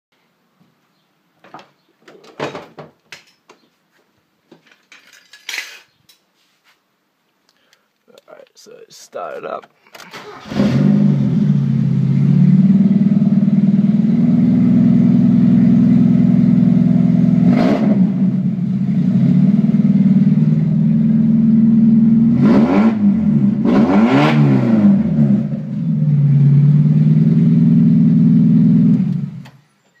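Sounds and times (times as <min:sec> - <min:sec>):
car engine idling and revving: 0:10.3 - 0:29.6.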